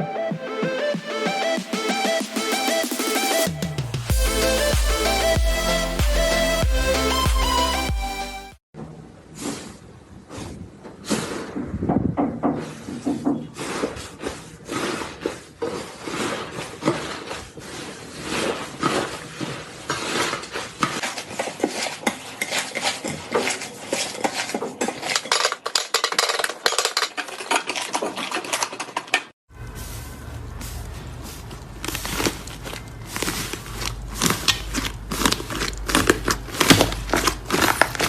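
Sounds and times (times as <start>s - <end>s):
slime crackling and popping: 31.6s - 38.0s.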